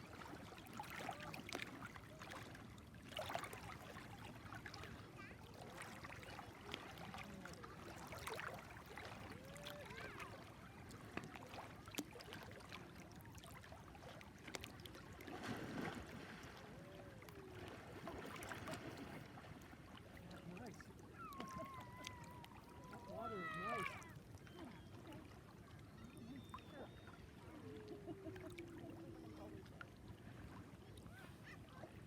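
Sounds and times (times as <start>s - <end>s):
water lapping at shore: 0.0s - 32.0s.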